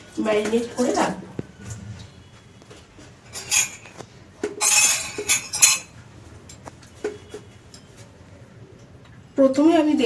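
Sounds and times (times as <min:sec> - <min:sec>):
utensils and dishes clinking: 0:03.1 - 0:06.7
utensil scraping: 0:03.2 - 0:05.9.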